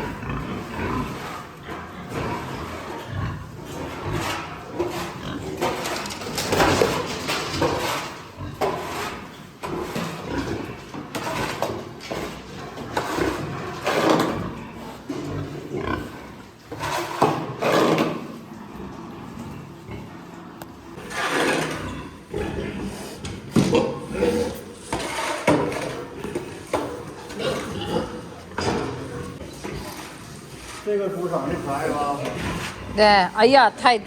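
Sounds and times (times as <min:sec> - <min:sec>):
pigs grunting and squealing: 0:00.0 - 0:33.4.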